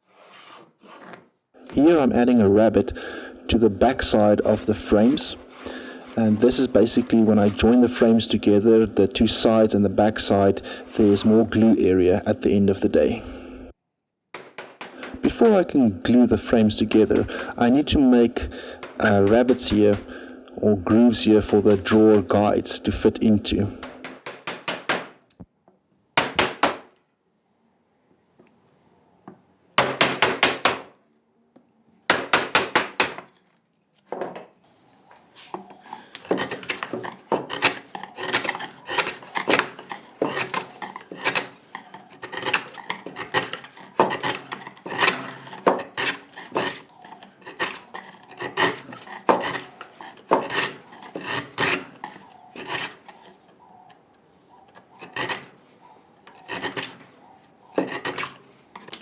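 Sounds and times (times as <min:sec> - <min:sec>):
hand tool rasping wood: 0:00.0 - 0:11.7, 0:14.6 - 0:25.0, 0:35.0 - 0:53.9, 0:54.5 - 0:59.0.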